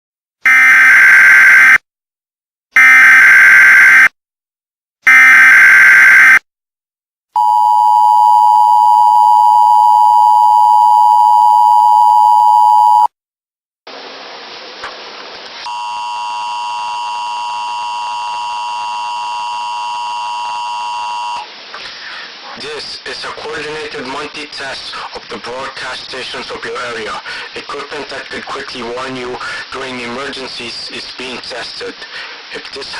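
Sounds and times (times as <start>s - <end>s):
two-tone attention signal: 7.4s - 13.1s, 15.7s - 21.4s.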